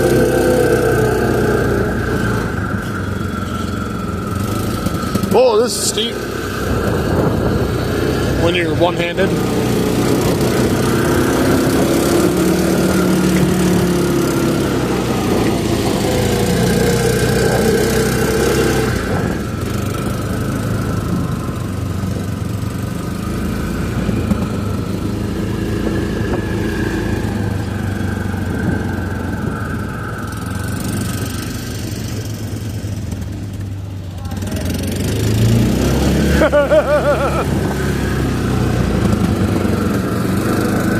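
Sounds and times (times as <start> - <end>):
off-road vehicle engine under load: 0.0 - 40.9.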